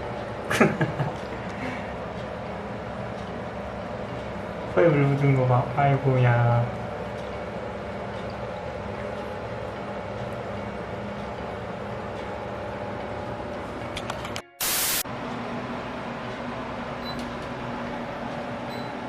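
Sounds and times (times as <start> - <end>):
electric fan whirring: 0.0 - 19.0
loud burst of static: 14.6 - 15.0.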